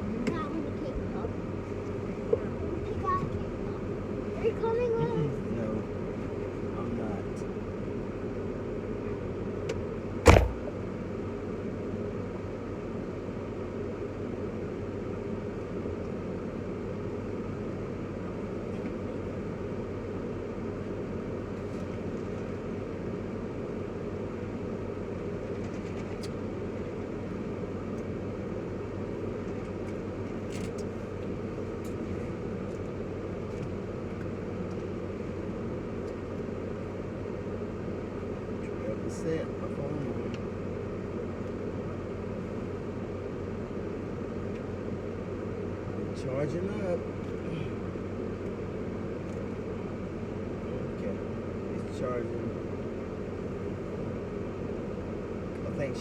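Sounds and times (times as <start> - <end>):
car interior hum: 0.0 - 17.0
sharp knock: 10.3 - 10.7.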